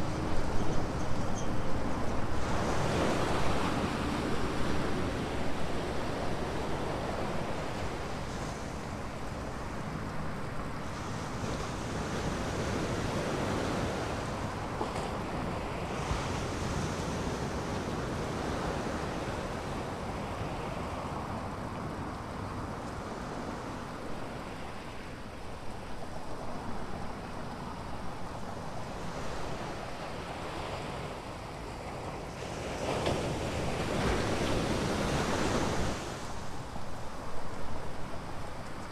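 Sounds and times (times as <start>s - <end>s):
ocean surf breaking on beach: 28.5s - 38.3s.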